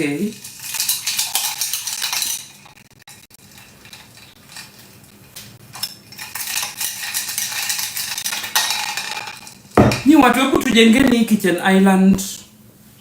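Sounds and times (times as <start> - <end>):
dishes clinking and clattering: 0.3 - 10.4.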